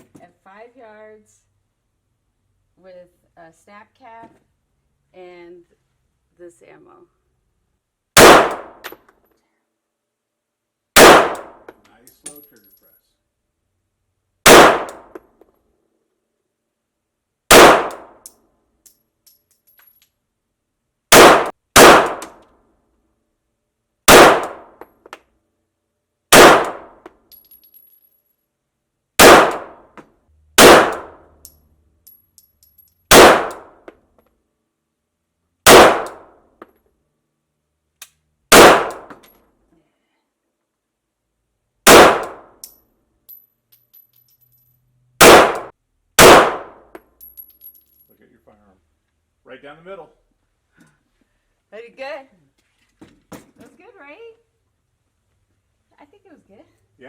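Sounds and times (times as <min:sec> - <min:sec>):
pistol shots echoing indoors: 0:08.2 - 0:08.8, 0:11.0 - 0:11.7, 0:14.5 - 0:15.2, 0:17.5 - 0:18.2, 0:21.1 - 0:22.4, 0:24.1 - 0:24.8, 0:26.3 - 0:27.0, 0:29.2 - 0:29.9, 0:30.6 - 0:31.3, 0:33.1 - 0:33.8, 0:35.7 - 0:36.3, 0:38.5 - 0:39.3, 0:41.9 - 0:42.7, 0:45.2 - 0:46.9.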